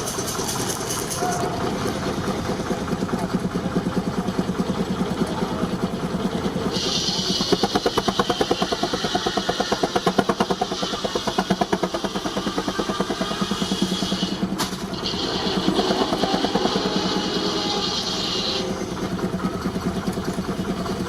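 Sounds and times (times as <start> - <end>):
steam engine beats: 0.0 - 21.0
steam hiss: 6.6 - 19.2.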